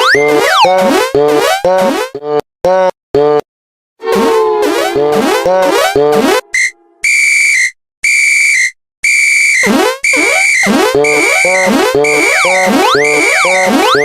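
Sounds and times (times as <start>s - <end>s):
warbling electronic chirps: 4.1s - 7.7s, 9.5s - 14.0s
high steady beep: 4.7s - 14.0s.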